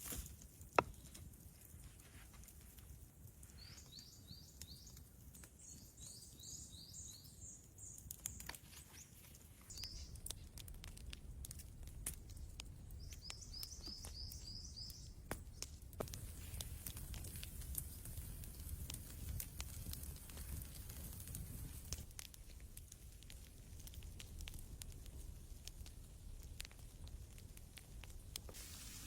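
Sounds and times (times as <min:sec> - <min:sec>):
small bird chirping: 0:03.5 - 0:10.3, 0:12.9 - 0:15.8.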